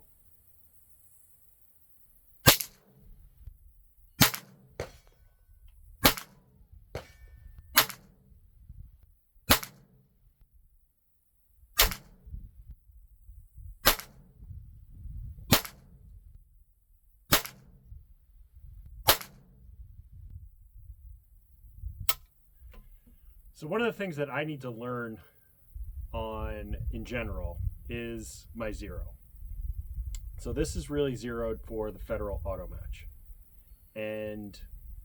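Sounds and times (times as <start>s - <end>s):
rifle shots cracking: 2.4s - 3.0s, 4.2s - 5.2s, 6.0s - 8.2s, 9.5s - 9.9s, 11.8s - 12.2s, 13.8s - 14.3s, 15.5s - 15.9s, 17.3s - 17.8s, 19.1s - 19.5s
faint clicks: 30.1s - 30.3s.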